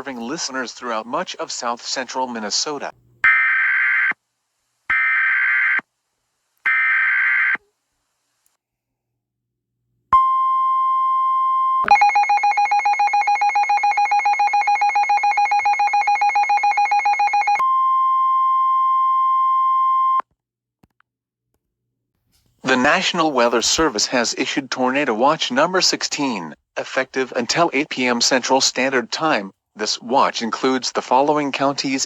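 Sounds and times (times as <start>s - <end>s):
steady alarm tone: 11.8s - 17.6s.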